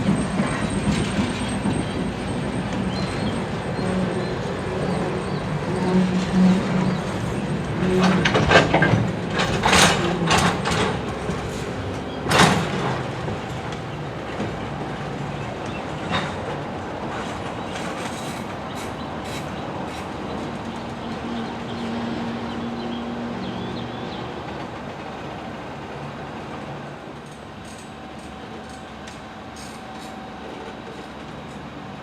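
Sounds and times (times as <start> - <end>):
diesel locomotive engine humming: 0.0 - 32.0
metallic clanks of train couplers: 6.2 - 14.6, 27.1 - 31.7.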